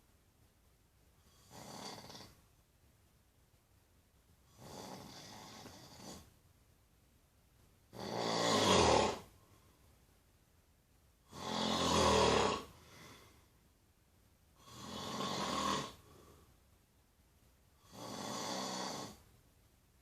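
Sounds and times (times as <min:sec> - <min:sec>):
person snoring: 0:01.3 - 0:02.4, 0:04.5 - 0:06.3, 0:07.9 - 0:09.3, 0:11.3 - 0:13.3, 0:14.6 - 0:16.4, 0:17.8 - 0:19.2.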